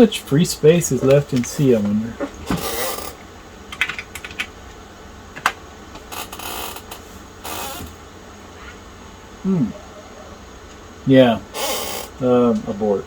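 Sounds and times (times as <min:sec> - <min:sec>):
keyboard keystrokes: 0:03.7 - 0:04.5
short rasping bursts: 0:11.5 - 0:12.2.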